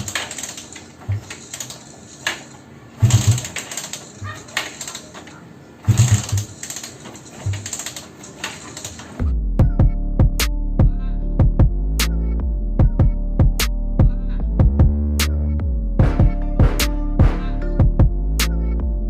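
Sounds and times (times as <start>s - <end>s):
motorcycle engine cranking and sputtering: 0.0s - 5.2s, 5.9s - 9.2s
music: 9.2s - 19.0s.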